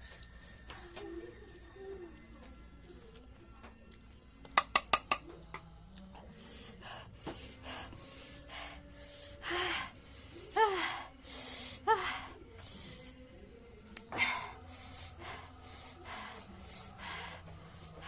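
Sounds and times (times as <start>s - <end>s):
person gasping and panting: 14.1s - 18.0s.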